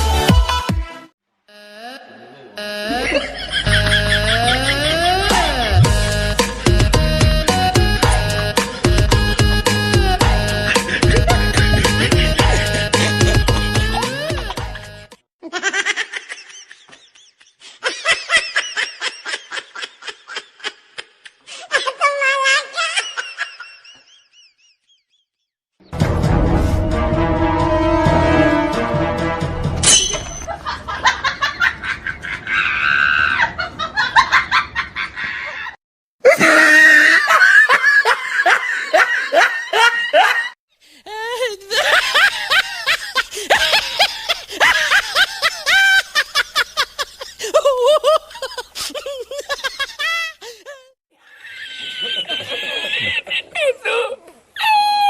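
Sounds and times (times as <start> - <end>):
person laughing: 2.8 - 6.8, 10.0 - 22.0, 33.4 - 54.3.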